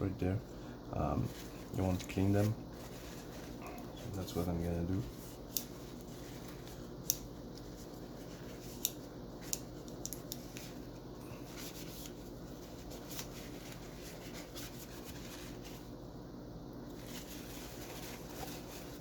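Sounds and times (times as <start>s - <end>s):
steady low hum: 0.0s - 19.0s
paper rubbing on parts: 1.2s - 6.9s, 11.4s - 15.9s, 17.0s - 19.0s.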